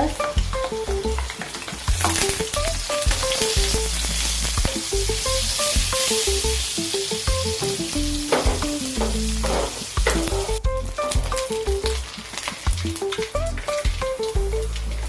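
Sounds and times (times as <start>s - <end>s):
plucked melody music: 0.0s - 15.0s
fish sizzling in oil: 1.3s - 10.1s.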